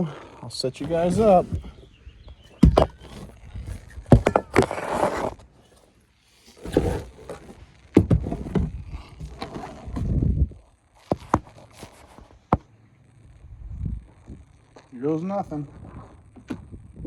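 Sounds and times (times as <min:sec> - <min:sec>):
scraping and rustling: 0:00.0 - 0:12.6
knocks and thuds of gear: 0:00.8 - 0:05.4, 0:06.6 - 0:10.4.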